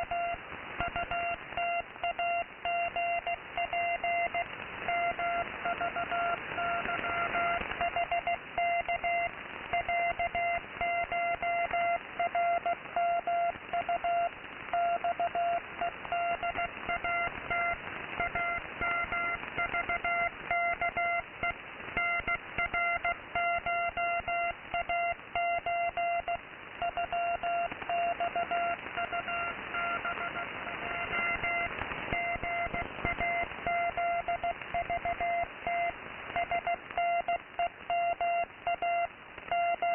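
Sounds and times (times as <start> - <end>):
morse code beeps: 0.0 - 21.2, 22.0 - 39.9
radio static: 25.5 - 39.9.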